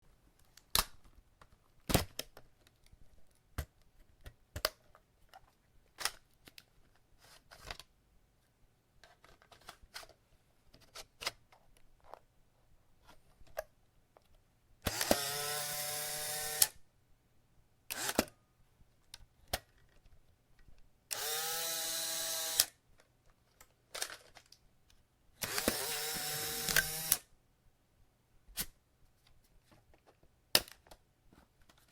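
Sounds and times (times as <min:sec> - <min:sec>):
camera motor whirring: 0:14.9 - 0:16.7, 0:21.1 - 0:22.7, 0:25.4 - 0:27.2
camera mechanical clicks: 0:25.4 - 0:27.2.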